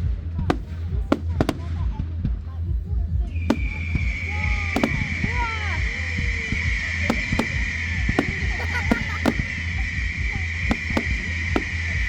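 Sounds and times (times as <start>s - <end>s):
fireworks bangs: 0.5s - 1.9s, 3.5s - 9.9s, 10.7s - 12.0s.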